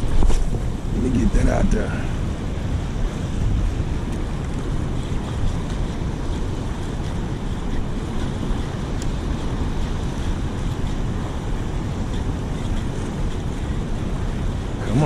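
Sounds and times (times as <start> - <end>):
water noise: 0.0 - 15.0
wind buffeting microphone: 0.0 - 15.0.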